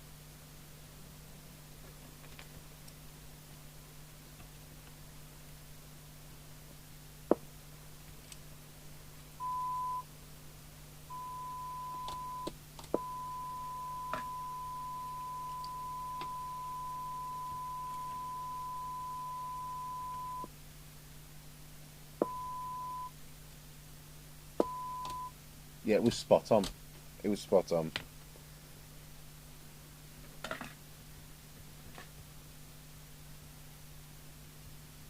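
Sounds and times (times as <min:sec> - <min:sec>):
low mains hum: 0:00.0 - 0:35.0
radio test tone: 0:11.1 - 0:20.5.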